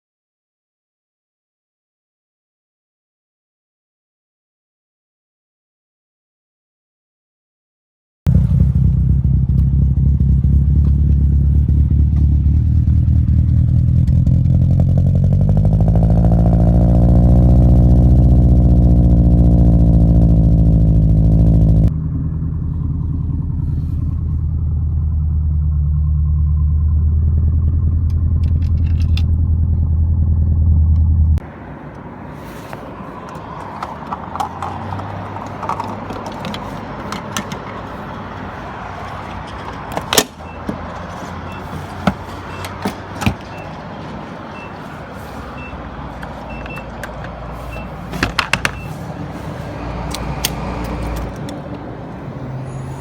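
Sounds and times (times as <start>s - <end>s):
car engine running: 8.3s - 32.0s, 32.8s - 51.6s
outdoor background noise: 8.3s - 53.0s
scattered clicks and knocks: 33.2s - 38.0s, 39.0s - 44.2s, 46.2s - 49.0s.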